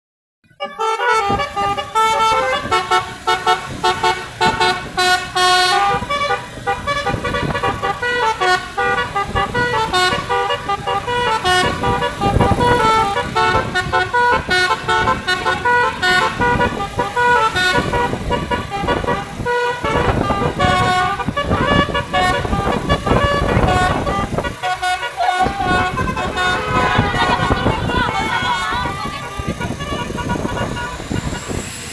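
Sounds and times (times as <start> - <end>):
multi-tone air horn melody: 0.4 - 31.9
rushes of noise: 10.7 - 31.9.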